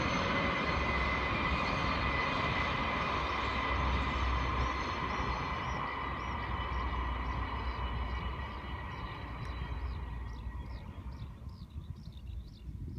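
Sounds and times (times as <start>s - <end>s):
train rumbling past: 0.0s - 12.9s
bird chirping: 4.7s - 12.9s.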